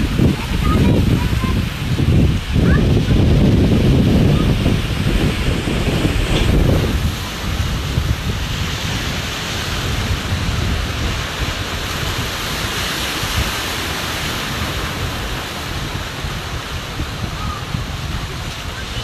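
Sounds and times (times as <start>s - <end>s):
wind on microphone: 0.0s - 19.0s.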